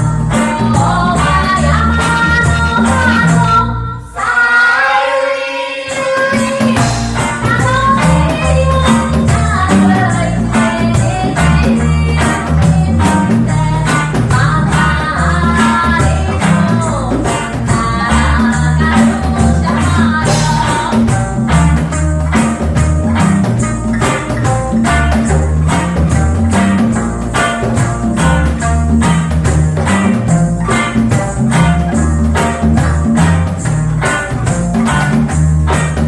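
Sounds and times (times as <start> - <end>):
steady bass line: 0.0 - 4.0, 6.8 - 36.0
percussion strokes: 0.0 - 4.4, 5.3 - 36.0
person singing: 0.0 - 23.2
live reggae band playing: 0.0 - 36.0.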